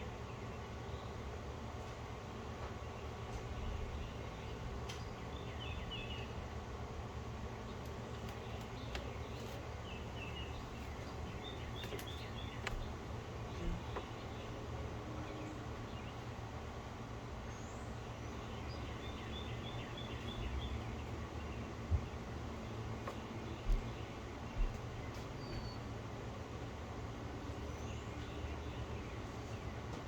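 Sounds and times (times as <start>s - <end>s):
small birds chirping: 2.6s - 30.0s.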